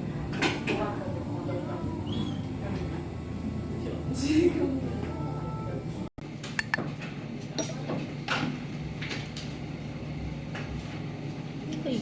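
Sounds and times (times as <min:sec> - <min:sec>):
ventilation hum: 0:00.0 - 0:12.0
dishes and cutlery clinking: 0:07.5 - 0:08.1.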